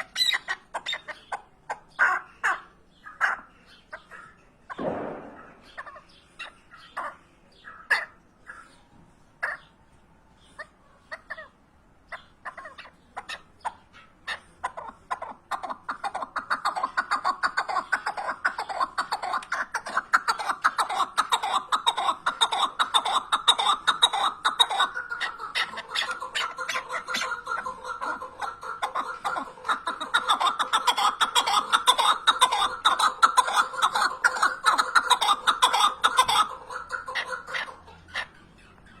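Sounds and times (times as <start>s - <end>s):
partridge clucking calls: 0.0s - 9.8s, 10.4s - 39.0s.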